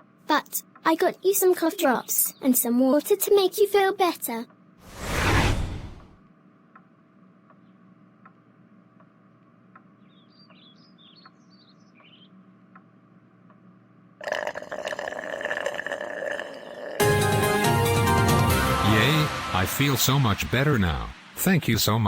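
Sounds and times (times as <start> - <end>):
bird chirps: 10.0 - 12.4
cartoon water gulping effect: 14.2 - 17.0.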